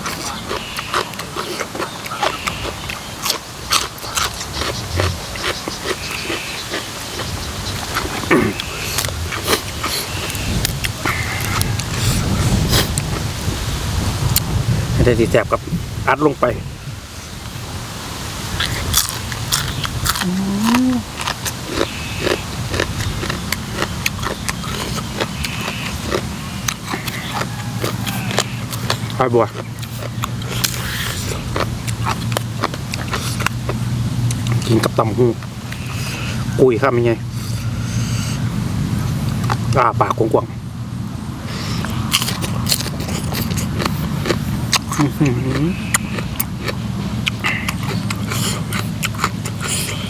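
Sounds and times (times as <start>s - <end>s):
person chewing food: 0.0s - 13.7s, 18.4s - 36.6s, 37.2s - 40.2s, 41.4s - 50.0s
person humming mm: 20.2s - 21.1s.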